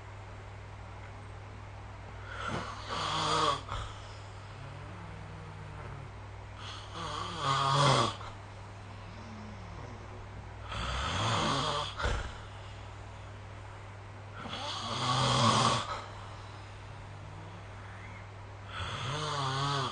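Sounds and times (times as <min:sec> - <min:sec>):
steady low hum: 0:00.0 - 0:19.9
person snoring: 0:02.2 - 0:12.6, 0:14.4 - 0:19.9.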